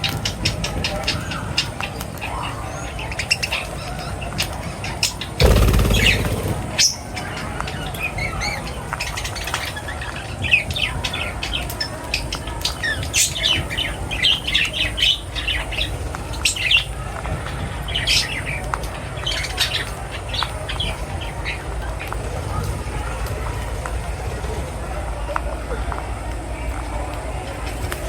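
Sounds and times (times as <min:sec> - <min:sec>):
small birds chirping: 0:00.0 - 0:24.7
steady low rumble: 0:05.4 - 0:06.9.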